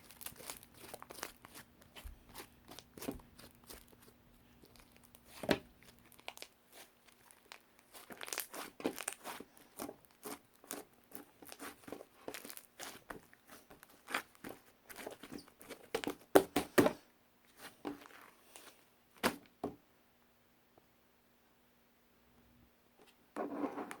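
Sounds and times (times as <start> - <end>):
crinkling material handled: 0.0 - 19.4.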